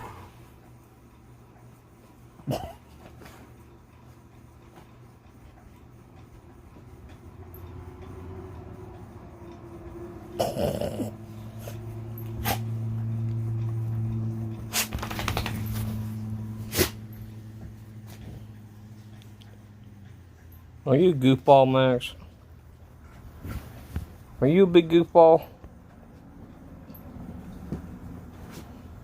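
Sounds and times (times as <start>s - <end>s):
dog growling: 10.3s - 11.8s.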